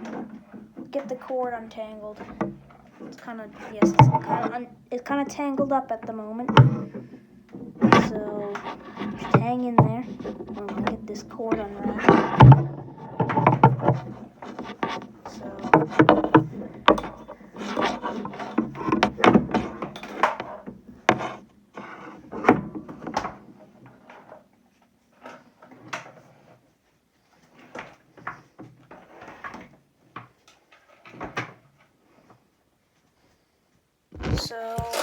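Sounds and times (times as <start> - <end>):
power cord knocking and rustling: 5.6 - 21.4.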